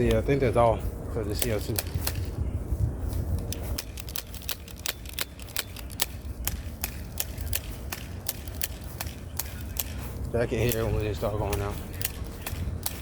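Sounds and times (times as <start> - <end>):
sharp clicks: 3.2 - 13.0.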